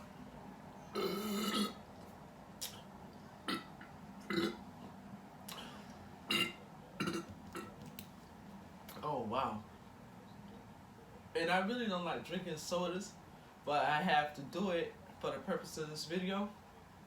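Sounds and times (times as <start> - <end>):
person burping: 0.9 - 1.8, 3.4 - 4.6, 6.3 - 7.7.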